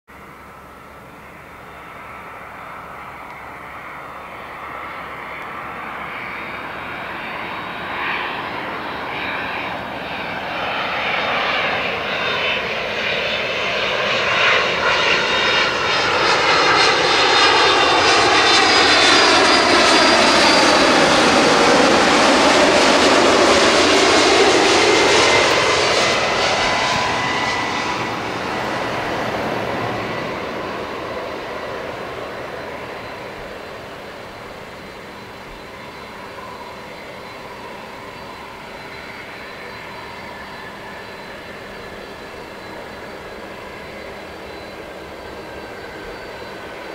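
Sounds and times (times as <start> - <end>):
jet airliner flying past: 0.1 - 46.9.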